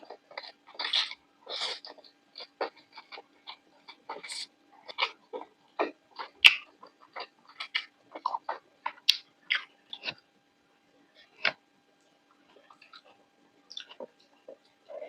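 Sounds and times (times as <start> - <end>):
crunchy chewing: 0.0 - 10.2, 11.1 - 15.0.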